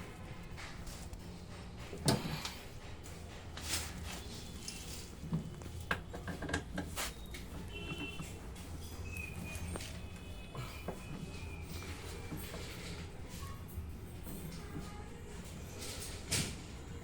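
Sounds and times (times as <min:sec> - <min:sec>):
parts knocking and clattering: 0:00.0 - 0:13.1.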